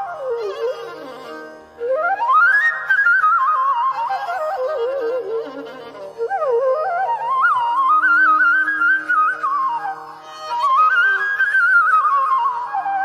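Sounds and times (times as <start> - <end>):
solo flute melody: 0.0 - 13.0.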